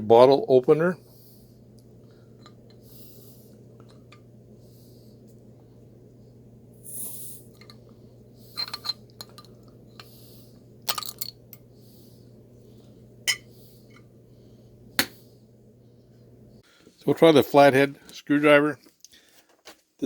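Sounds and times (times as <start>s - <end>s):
bottle opener clinking on glass bottle: 13.3s - 13.5s.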